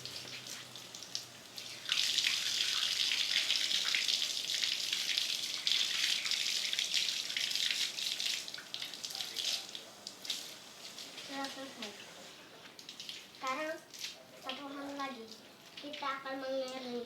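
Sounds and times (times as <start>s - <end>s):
hands washing: 0.0s - 16.1s
water splashes and drips: 0.0s - 17.0s.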